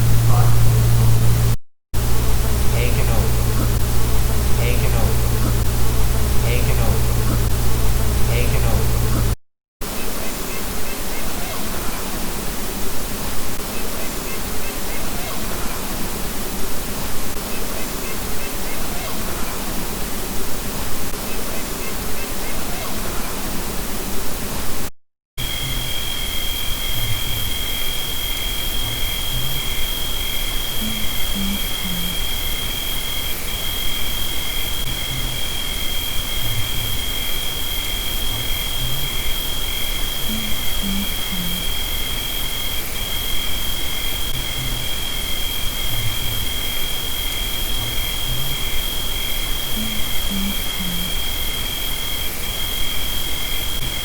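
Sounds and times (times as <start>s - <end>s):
low pulsing tone: 0.0s - 9.4s, 40.3s - 41.7s
steady high-pitched tone: 0.0s - 9.4s, 30.8s - 32.3s, 40.3s - 41.8s, 49.8s - 51.2s
insect chirping in pulses: 0.0s - 12.1s, 25.4s - 54.0s
loud steady hiss: 0.0s - 24.8s, 25.4s - 54.0s
insect high trill: 25.4s - 54.0s.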